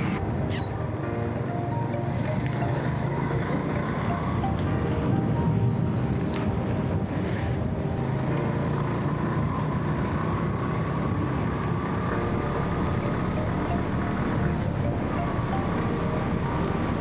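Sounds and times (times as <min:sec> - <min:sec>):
motorcycle engine running: 0:08.0 - 0:17.0.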